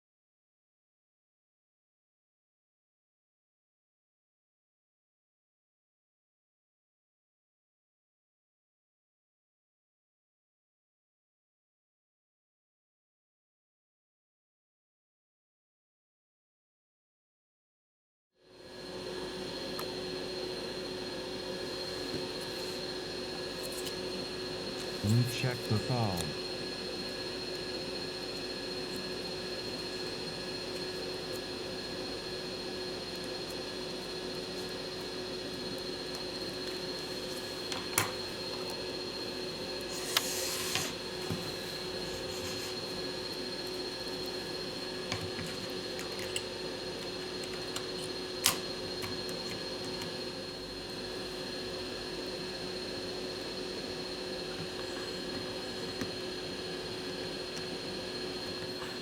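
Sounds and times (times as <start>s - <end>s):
motor humming with faint whine: 18.4s - 59.0s.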